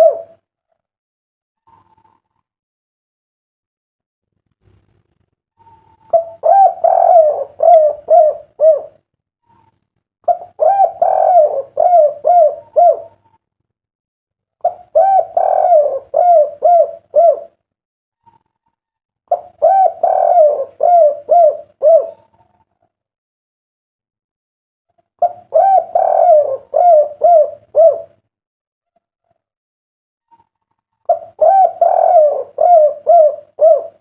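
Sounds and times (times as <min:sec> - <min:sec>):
dove cooing: 0:00.0 - 0:00.4, 0:05.6 - 0:09.7, 0:10.3 - 0:13.4, 0:14.6 - 0:17.6, 0:19.3 - 0:22.9, 0:25.2 - 0:28.2, 0:30.3 - 0:34.0.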